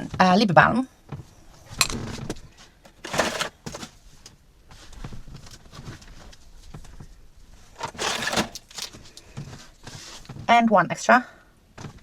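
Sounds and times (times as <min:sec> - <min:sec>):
faint rustling: 0:01.0 - 0:10.5.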